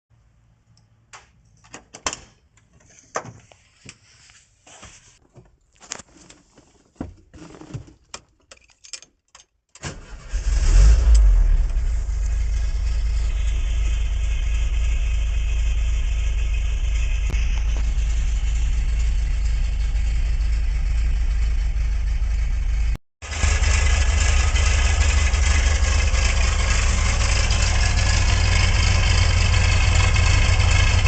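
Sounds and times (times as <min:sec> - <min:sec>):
van engine starting and idling: 0:09.8 - 0:31.0.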